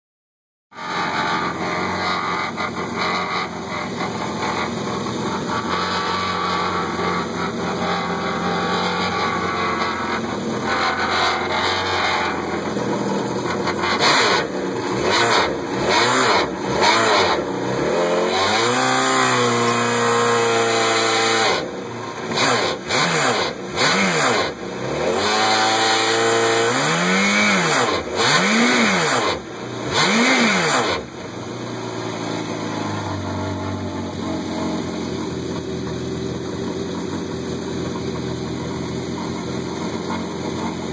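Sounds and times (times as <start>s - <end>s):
watercraft engine revving: 0.7s - 40.9s.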